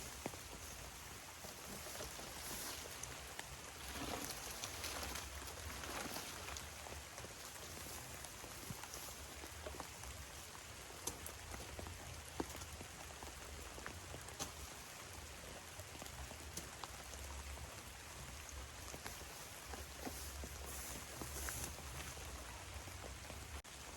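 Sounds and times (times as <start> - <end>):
light rain hissing: 0.0 - 23.9
raindrops ticking: 0.0 - 23.9.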